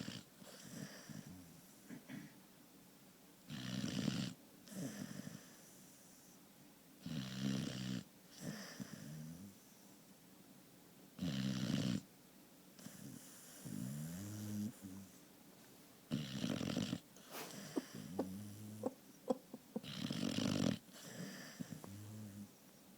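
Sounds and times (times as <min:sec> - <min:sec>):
pet snoring: 0:00.0 - 0:01.8, 0:03.5 - 0:06.0, 0:07.0 - 0:09.6, 0:11.2 - 0:12.1, 0:12.8 - 0:15.2, 0:16.1 - 0:22.6.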